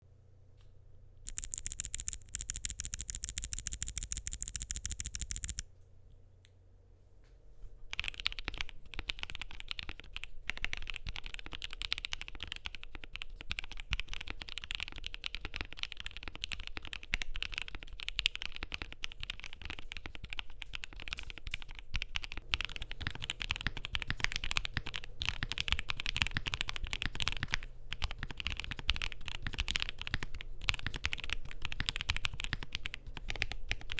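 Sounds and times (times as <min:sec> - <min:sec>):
mechanical keyboard typing: 0:01.3 - 0:05.6.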